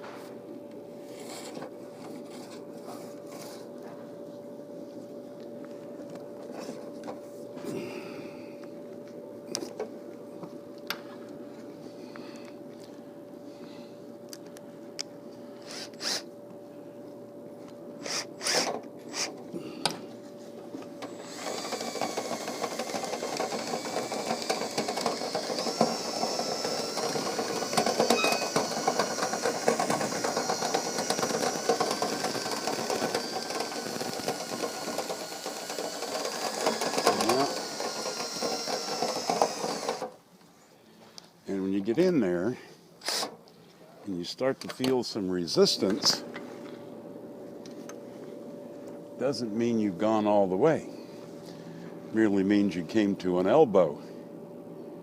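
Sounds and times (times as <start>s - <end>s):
electric drill whining: 15.6s - 16.3s, 18.0s - 19.4s, 21.0s - 40.2s, 43.0s - 43.3s.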